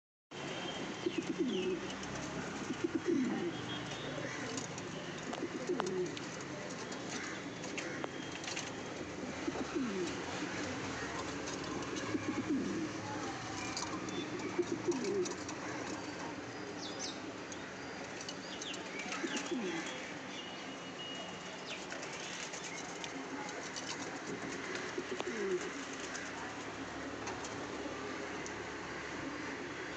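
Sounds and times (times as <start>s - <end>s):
pigeons cooing: 1.0s - 16.5s, 18.2s - 20.0s, 22.7s - 28.0s.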